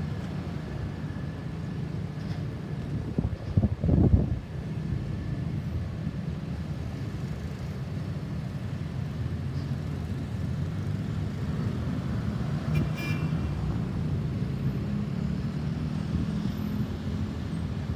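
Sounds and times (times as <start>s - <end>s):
car horn toot: 12.7s - 13.4s.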